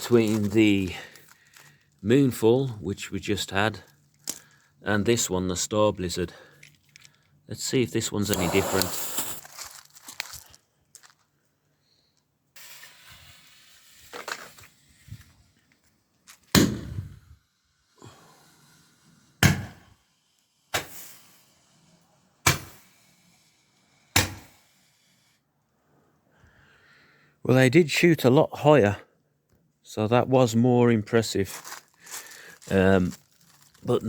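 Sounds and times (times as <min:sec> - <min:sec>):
roman candle shots: 0:08.0 - 0:09.6
firework hissing: 0:08.2 - 0:09.6, 0:12.6 - 0:15.3, 0:16.9 - 0:25.4.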